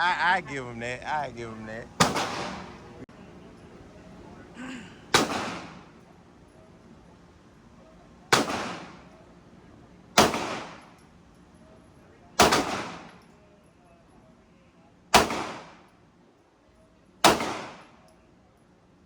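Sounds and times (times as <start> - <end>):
gunshots with echo: 2.0 - 2.7, 5.1 - 5.9, 8.3 - 9.0, 10.2 - 10.8, 12.4 - 13.1, 15.2 - 15.8, 17.2 - 17.9.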